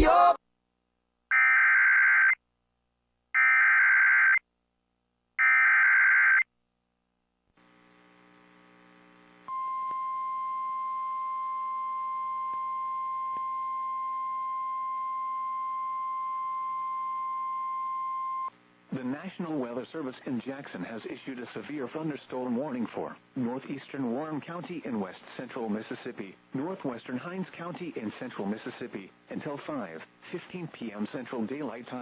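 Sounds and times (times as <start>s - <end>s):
steady alarm tone: 3.4s - 4.4s
radio hiss: 18.6s - 32.0s.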